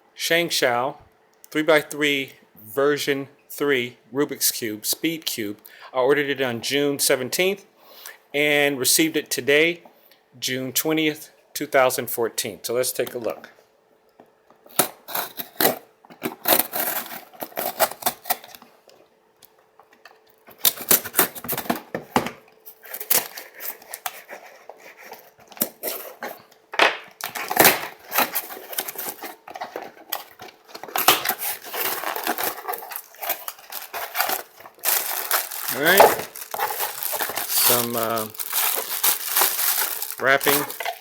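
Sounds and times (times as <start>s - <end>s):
packaging crackling and rustling: 14.8s - 18.6s, 22.7s - 26.6s, 27.2s - 41.0s.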